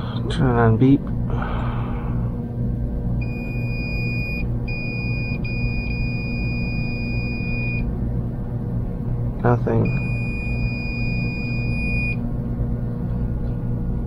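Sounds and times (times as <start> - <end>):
multimeter continuity beeps: 3.2 - 7.9, 9.8 - 12.2.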